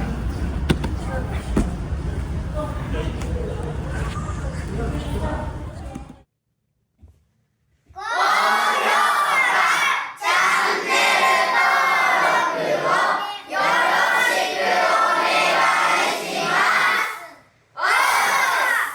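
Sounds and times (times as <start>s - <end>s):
voices chanting in unison: 8.0s - 18.9s.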